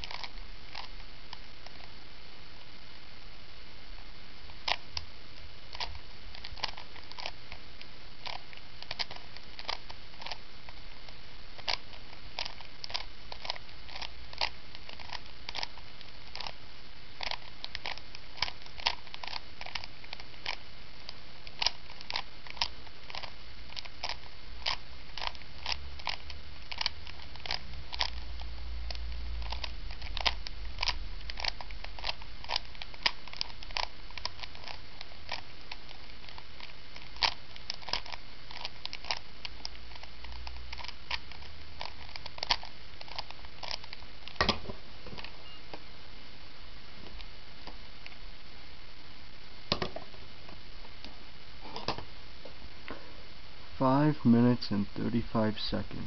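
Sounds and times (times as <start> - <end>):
puzzle cube plastic clicks: 0.0 - 1.9, 5.7 - 16.6, 17.2 - 45.8.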